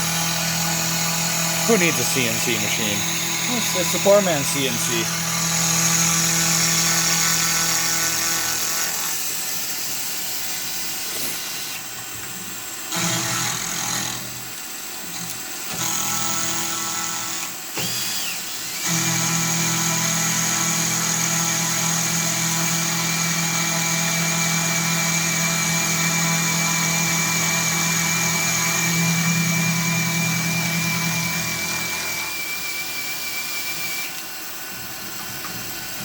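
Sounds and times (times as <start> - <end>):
milling machine whine: 0.0 - 8.8.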